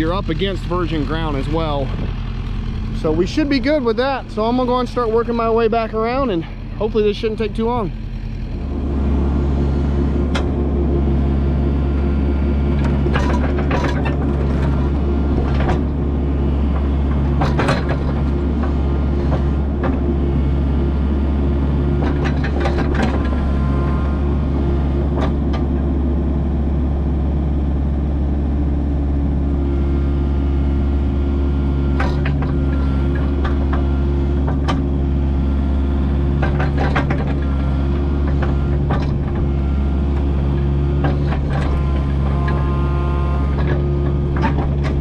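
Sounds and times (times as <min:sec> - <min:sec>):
excavator diesel engine running: 0:00.0 - 0:45.0
metallic clanks and knocks: 0:12.8 - 0:16.0, 0:16.7 - 0:20.1, 0:36.3 - 0:42.6, 0:43.5 - 0:45.0.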